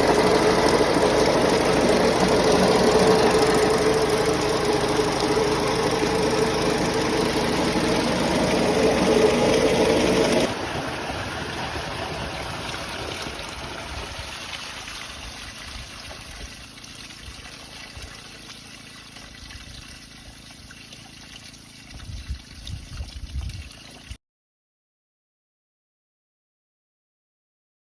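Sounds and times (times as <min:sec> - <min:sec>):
machine motor humming: 0:00.0 - 0:10.6
water trickling and draining: 0:00.0 - 0:24.2.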